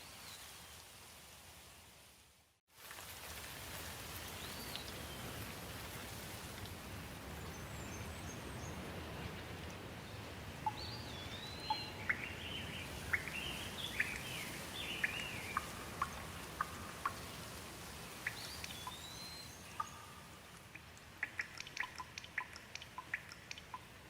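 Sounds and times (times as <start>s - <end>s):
steady rain hiss: 0.0s - 24.0s
birds chirping and whistling: 18.3s - 20.2s.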